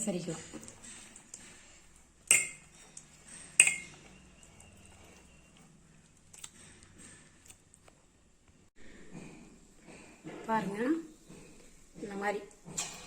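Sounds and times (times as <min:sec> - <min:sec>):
utensil clinking metal vessel: 0:02.2 - 0:04.4.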